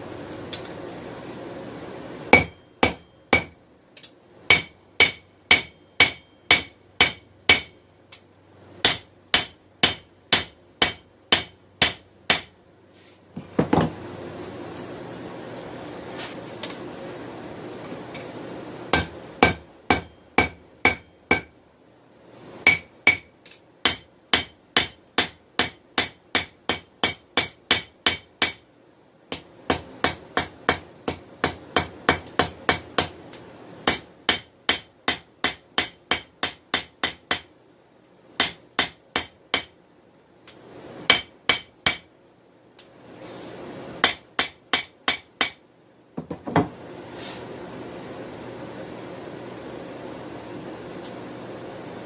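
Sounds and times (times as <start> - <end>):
hammer ringing on hot steel: 2.3 - 3.6, 4.5 - 7.8, 8.8 - 12.5, 18.9 - 21.5, 22.6 - 28.6.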